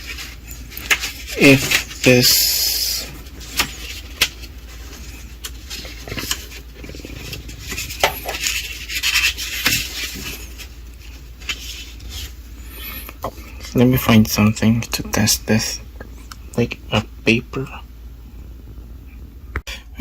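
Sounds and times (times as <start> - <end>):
rustling of objects: 0.0 - 14.4.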